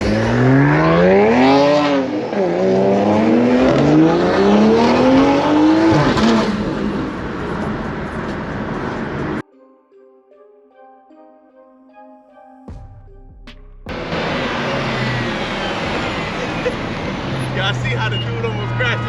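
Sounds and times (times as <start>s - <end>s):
car engine accelerating hard: 0.0s - 9.4s, 13.9s - 19.0s.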